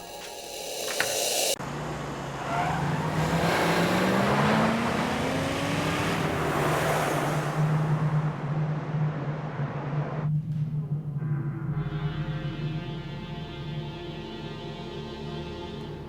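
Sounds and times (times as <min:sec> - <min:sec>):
road noise: 0:00.0 - 0:11.2
car engine accelerating: 0:01.6 - 0:11.2.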